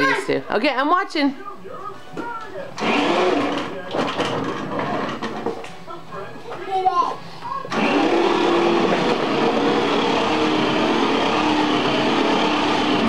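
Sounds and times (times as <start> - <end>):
toy car electric motor whine: 7.7 - 13.0.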